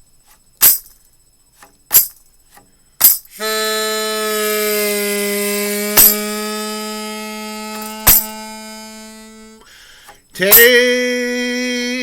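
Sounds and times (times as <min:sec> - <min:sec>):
harmonica notes: 0:03.3 - 0:12.0
small drum strikes: 0:07.8 - 0:08.5.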